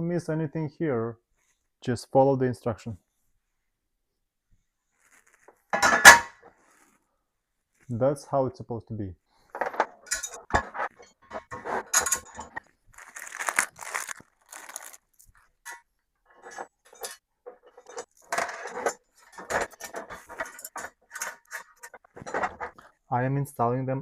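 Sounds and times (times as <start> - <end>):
metal parts clinking and rattling: 9.5 - 15.8, 16.4 - 22.8.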